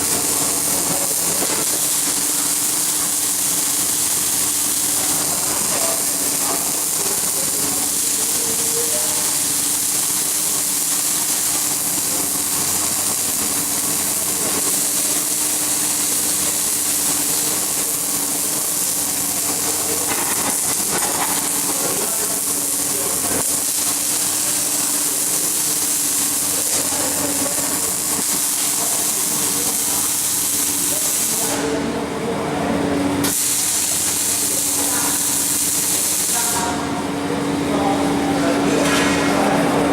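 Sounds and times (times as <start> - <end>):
electric arc welding hiss: 0.0 - 31.8, 33.1 - 37.1.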